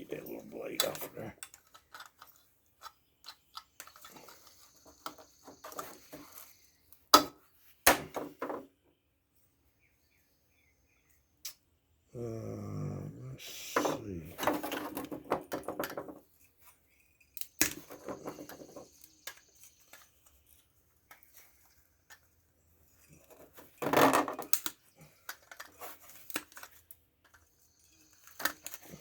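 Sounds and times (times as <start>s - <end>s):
tools and metal parts clattering: 0.1s - 6.4s, 14.4s - 16.2s.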